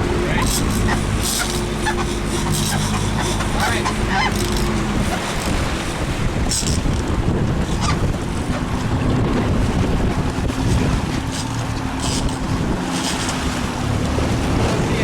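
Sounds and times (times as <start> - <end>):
water washing: 0.0 - 15.0
wind buffeting microphone: 0.0 - 15.0.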